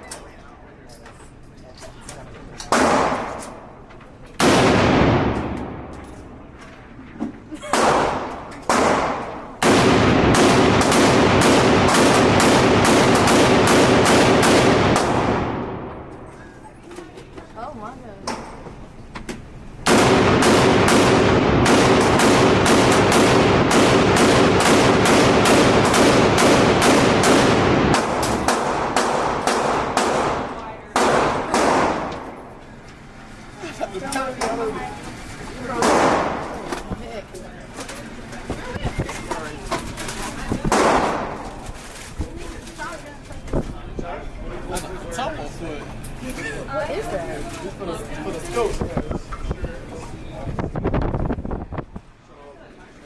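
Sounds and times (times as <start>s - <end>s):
continuous loud din: 0.0s - 52.0s
gunshots with echo: 2.7s - 3.7s, 4.4s - 6.1s, 7.7s - 16.3s, 19.9s - 32.6s, 35.8s - 36.7s, 40.7s - 41.7s.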